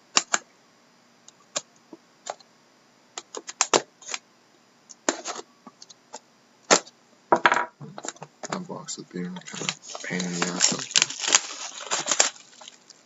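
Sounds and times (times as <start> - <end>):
cardboard box clicking and crackling: 9.4 - 13.0.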